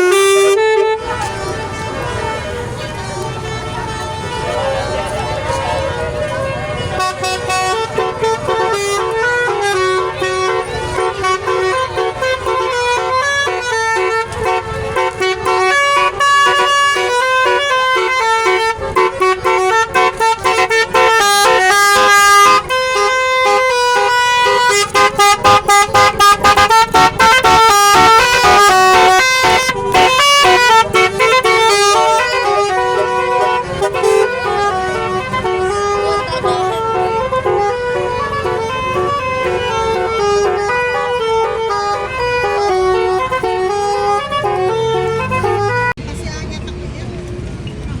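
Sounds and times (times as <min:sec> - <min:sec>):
multi-tone bus horn melody: 0:00.0 - 0:46.0.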